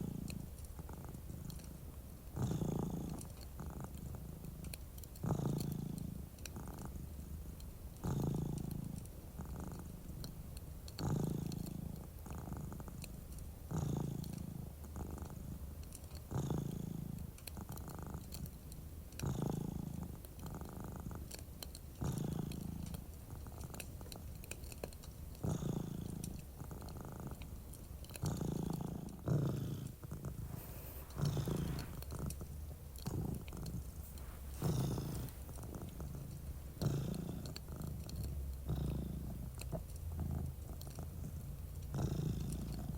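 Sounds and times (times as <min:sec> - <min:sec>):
cat purring: 0:00.0 - 0:42.9
fireplace crackling: 0:26.1 - 0:40.1.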